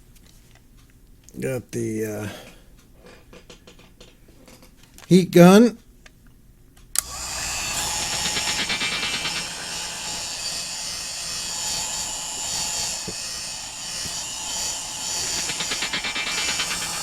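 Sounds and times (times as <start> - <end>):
heat gun fan blowing: 7.0 - 17.0.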